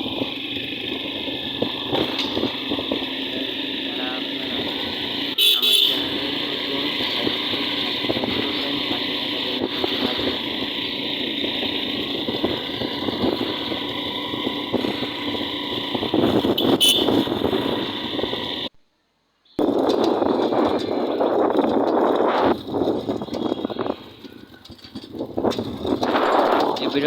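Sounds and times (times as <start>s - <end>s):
road vehicle rumble and hiss: 0.0s - 18.7s.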